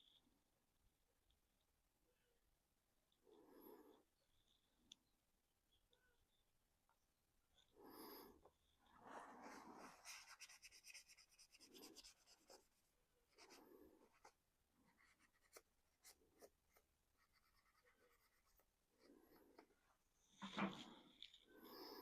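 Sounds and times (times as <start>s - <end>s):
quiet breathing: 3.1s - 5.0s, 7.5s - 22.0s
scratching on plastic model: 9.0s - 21.5s.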